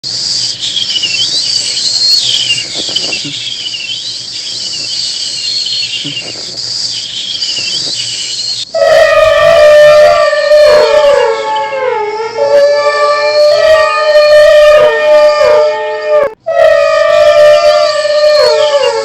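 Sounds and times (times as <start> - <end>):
insect chorus: 0.0 - 19.0
swooping chirping calls: 0.1 - 19.0.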